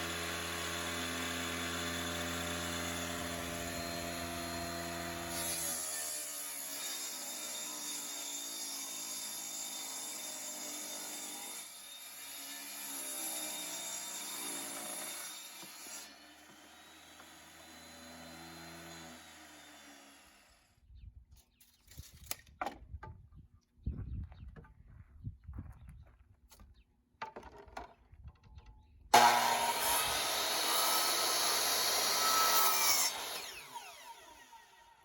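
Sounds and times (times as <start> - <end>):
wood knocking and clattering: 27.2 - 28.7
table saw ripping board: 29.1 - 34.3.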